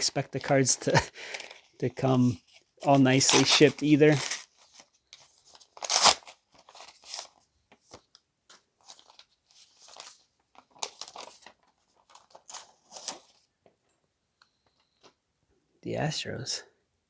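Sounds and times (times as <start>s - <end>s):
crinkling and rustling: 0.0s - 15.2s
paper and plastic tearing: 2.8s - 4.9s, 5.5s - 7.4s.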